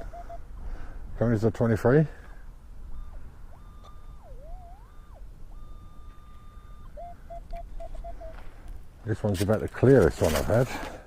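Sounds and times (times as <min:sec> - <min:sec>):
metal detector gliding tone: 0:00.0 - 0:00.6, 0:02.8 - 0:08.6.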